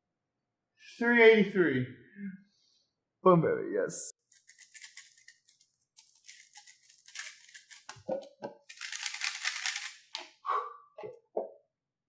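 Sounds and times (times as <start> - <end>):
puzzle cube clicking: 4.4 - 10.4.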